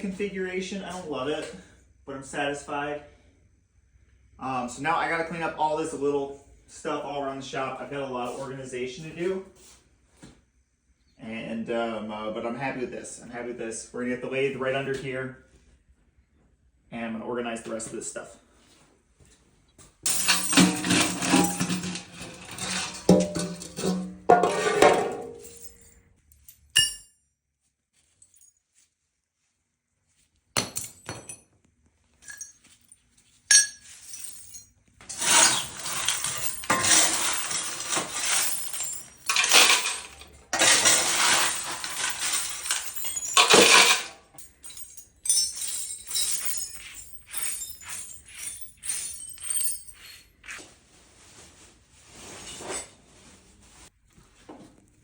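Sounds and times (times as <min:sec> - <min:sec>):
small hard objects clattering: 0:20.1 - 0:25.8, 0:33.6 - 0:50.2.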